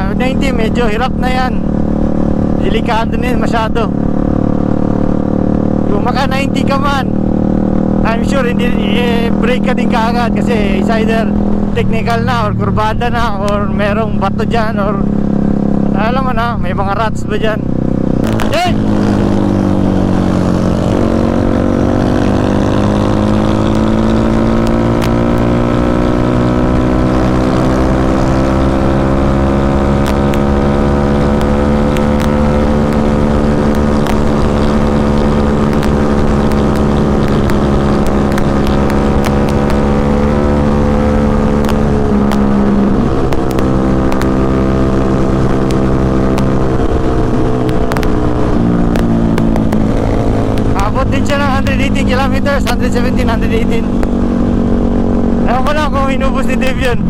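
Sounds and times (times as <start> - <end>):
motorcycle engine at high revs: 0.0 - 57.0.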